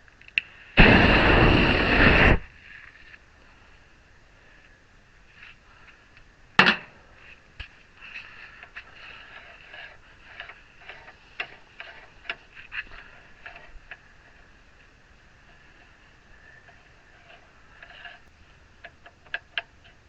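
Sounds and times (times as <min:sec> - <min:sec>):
crackling tack weld: 0:00.4 - 0:03.2.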